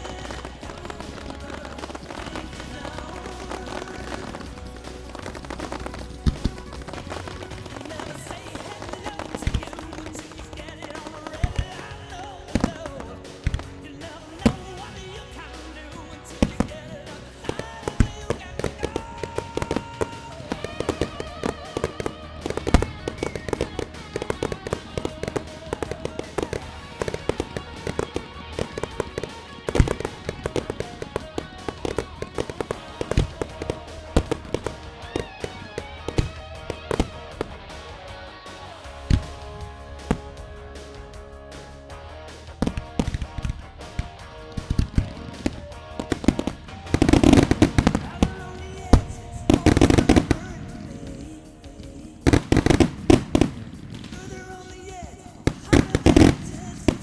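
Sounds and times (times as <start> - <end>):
fireworks banging and cracking: 0.0 - 57.0
music soundtrack: 0.0 - 57.0.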